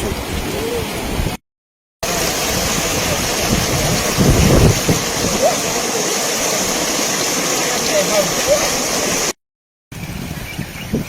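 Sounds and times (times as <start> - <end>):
floodwater rushing: 0.0 - 1.4, 2.0 - 9.4
wind rumble on microphone: 0.0 - 1.4, 2.3 - 5.6, 9.9 - 11.0.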